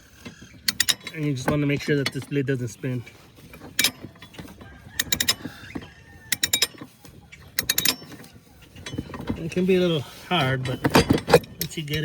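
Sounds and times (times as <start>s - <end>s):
ratchet wrench clicking: 0.2s - 1.4s, 5.0s - 5.6s, 6.3s - 6.9s, 7.6s - 8.2s.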